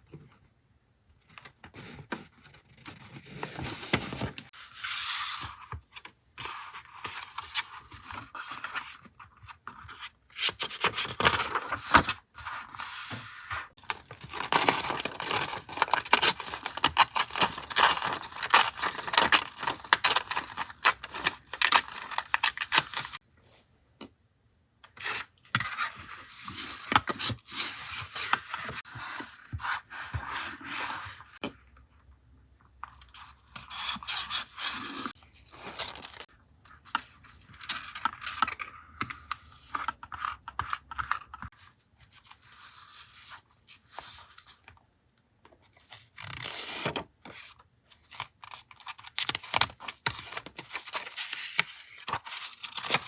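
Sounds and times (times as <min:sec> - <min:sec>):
paper crinkling and tearing: 0:13.8 - 0:23.2.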